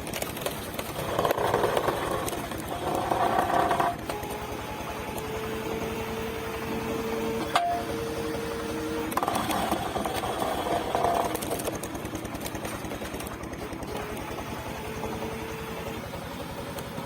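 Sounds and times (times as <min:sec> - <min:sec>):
wood splitter motor chugging: 0:00.0 - 0:17.0
hydraulic whine: 0:00.8 - 0:17.0.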